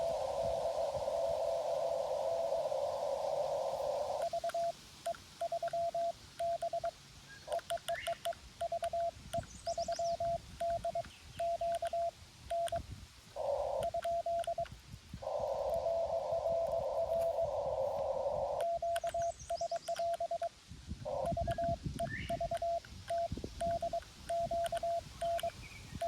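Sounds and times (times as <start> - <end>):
radio receiver hiss: 0.0 - 7.0
morse code tone: 4.2 - 4.7, 5.4 - 6.9, 9.8 - 12.8, 21.3 - 25.5.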